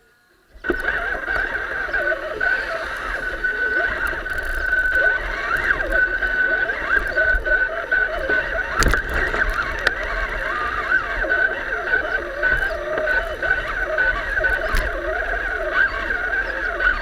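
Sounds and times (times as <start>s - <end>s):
electric motor whining: 0.4s - 17.0s.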